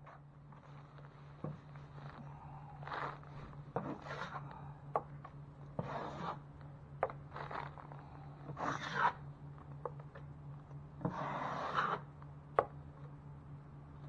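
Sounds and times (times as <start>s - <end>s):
low steady hum: 0.0s - 14.0s
drywall tool scraping wall: 3.8s - 4.4s, 5.8s - 6.5s, 8.5s - 9.2s, 11.0s - 12.1s.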